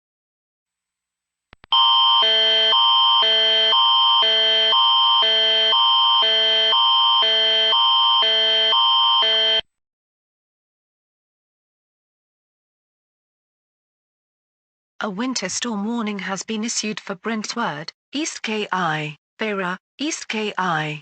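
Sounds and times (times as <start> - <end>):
electronic two-tone alarm: 1.7 - 9.6.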